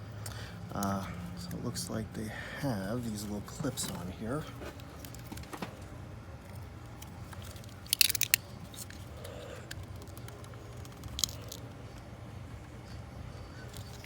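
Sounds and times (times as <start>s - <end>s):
steady low hum: 0.0s - 14.0s
plastic clips clicking and snapping: 7.4s - 9.0s.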